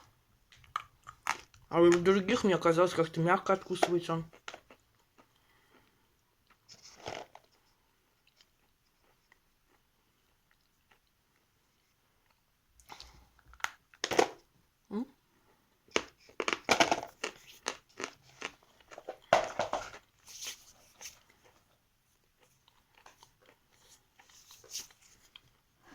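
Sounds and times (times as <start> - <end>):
chalk being bitten and chewed: 16.2 - 19.0.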